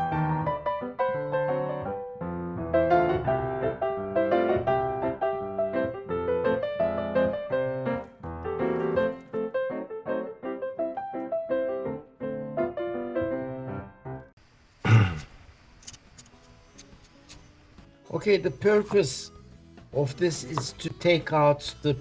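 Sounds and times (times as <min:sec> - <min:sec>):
piano music: 0:00.0 - 0:14.3.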